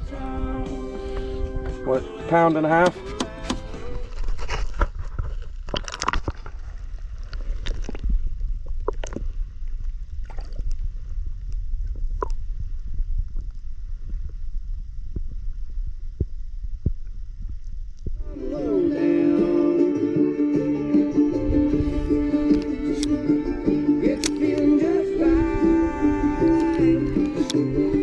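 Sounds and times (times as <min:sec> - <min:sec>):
steady low rumble: 0:00.0 - 0:05.7, 0:06.4 - 0:28.0
water sloshing and gurgling: 0:04.0 - 0:18.2.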